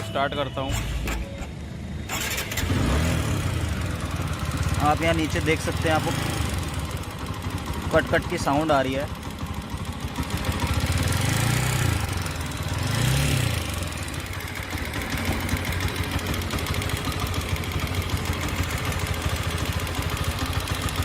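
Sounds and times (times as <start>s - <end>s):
motorcycle engine idling: 0.0s - 21.0s
rapid engine ticking: 2.1s - 21.0s.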